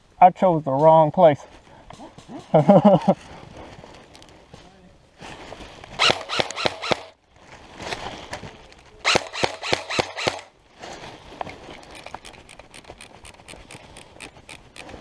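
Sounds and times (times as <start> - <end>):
airsoft gun shots: 6.0 - 7.1, 9.1 - 10.5
distant airsoft gun shots: 6.0 - 7.2, 9.1 - 10.5.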